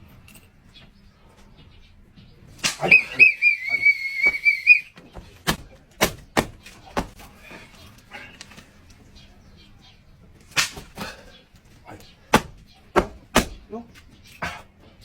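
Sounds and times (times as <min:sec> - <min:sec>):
whistle blown: 0:02.8 - 0:04.9.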